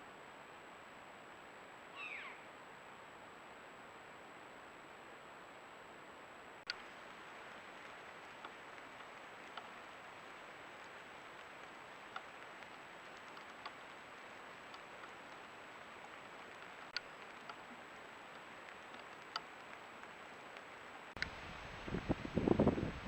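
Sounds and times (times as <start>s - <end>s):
faint outdoor hiss: 0.0s - 23.0s
light ticks: 6.7s - 21.4s.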